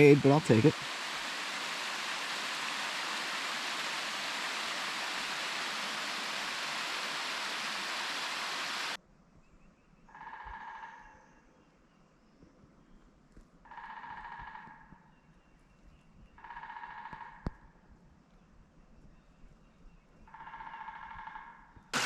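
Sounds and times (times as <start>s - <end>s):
waterfall rushing: 0.0s - 9.0s.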